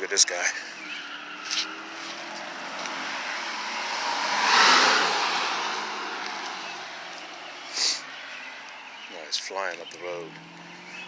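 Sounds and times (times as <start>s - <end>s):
car passing by: 0.9s - 8.6s.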